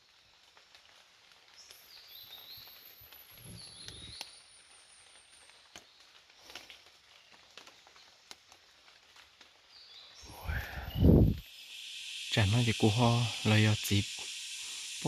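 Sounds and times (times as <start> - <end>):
light clicks and rustles: 5.1 - 9.5.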